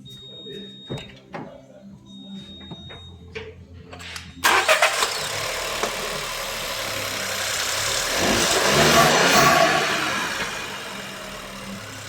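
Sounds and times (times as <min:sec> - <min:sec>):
car engine starting and idling: 0:03.3 - 0:12.0.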